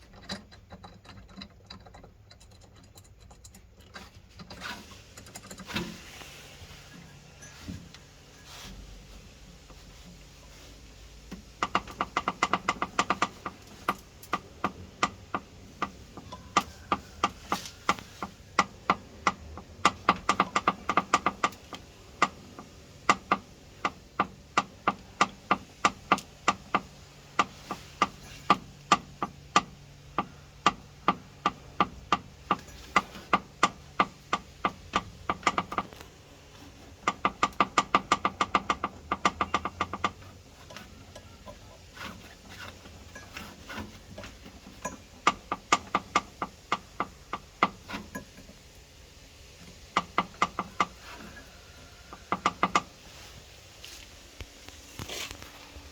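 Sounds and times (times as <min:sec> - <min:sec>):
washing machine clicking and knocking: 0:11.3 - 0:48.5, 0:49.6 - 0:53.0.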